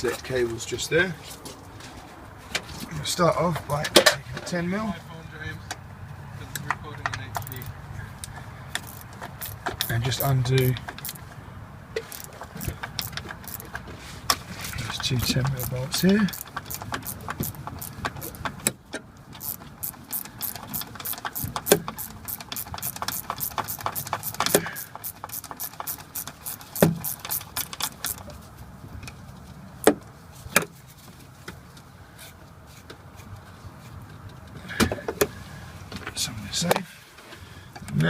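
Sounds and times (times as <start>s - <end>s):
ratchet wrench clicking: 7.3s - 7.8s, 8.7s - 11.2s, 12.0s - 13.8s, 14.6s - 18.5s, 19.4s - 28.3s.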